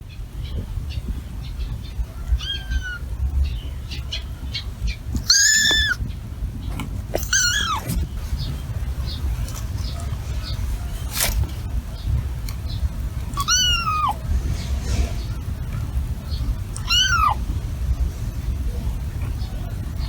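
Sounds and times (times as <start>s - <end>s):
steady low rumble: 0.0s - 20.0s
kitten mewing: 2.3s - 3.0s, 5.2s - 6.1s, 6.8s - 8.1s, 13.3s - 14.3s, 16.7s - 17.5s.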